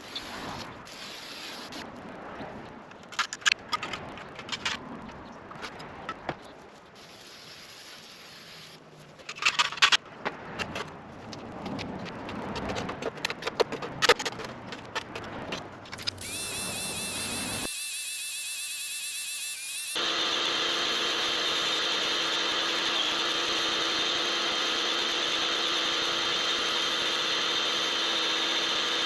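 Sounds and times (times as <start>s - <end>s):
hand scraper scraping steel: 16.0s - 20.0s
high warbling tone: 16.0s - 20.0s.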